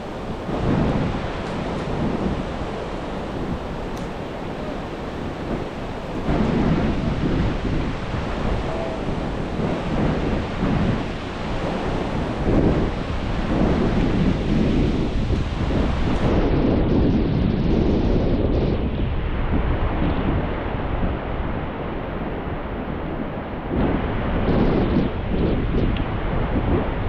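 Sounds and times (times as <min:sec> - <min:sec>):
rain falling: 0:00.0 - 0:16.3
surf: 0:00.0 - 0:27.0
wind buffeting microphone: 0:00.0 - 0:27.0.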